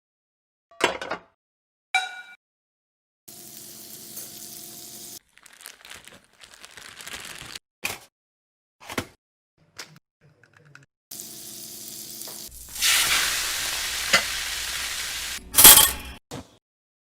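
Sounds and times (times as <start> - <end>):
food sizzling in frying pan: 3.3 - 5.2, 11.1 - 16.1.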